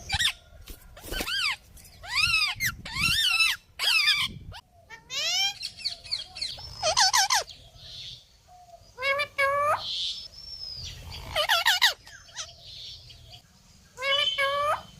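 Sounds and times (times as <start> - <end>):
parrot calling loudly: 1.3 - 5.7, 6.6 - 7.5, 11.2 - 12.5, 14.0 - 14.9.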